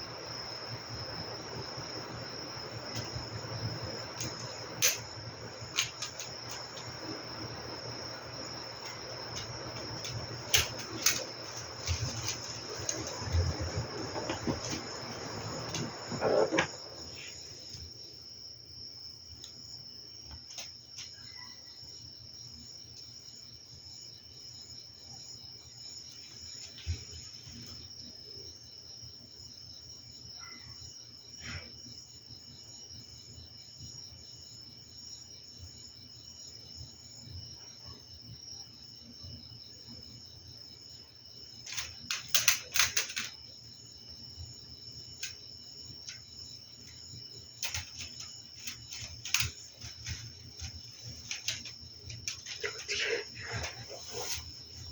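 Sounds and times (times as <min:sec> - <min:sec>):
electric fan humming: 0:00.0 - 0:18.0, 0:41.4 - 0:54.9
scattered clicks: 0:05.7 - 0:06.9, 0:08.8 - 0:14.9, 0:41.6 - 0:43.4, 0:47.6 - 0:53.8.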